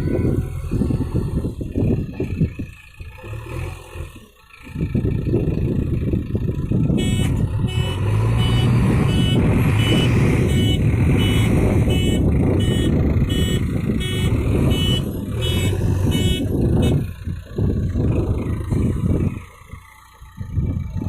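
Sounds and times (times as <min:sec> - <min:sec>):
diesel engine running hard: 0:00.0 - 0:21.0
reversing alarm beeping: 0:07.0 - 0:17.0.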